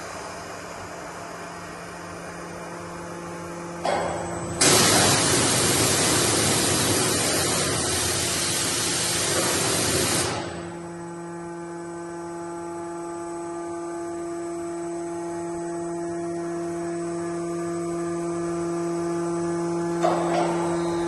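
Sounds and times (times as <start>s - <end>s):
machine hum with steady tones: 0.0s - 21.0s
loud hiss of air: 4.6s - 10.6s.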